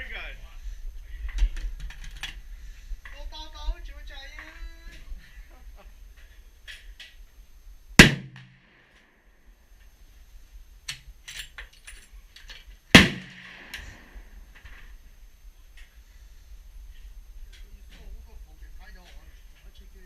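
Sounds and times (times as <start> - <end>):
gunshots: 8.0 - 8.8, 12.9 - 14.3.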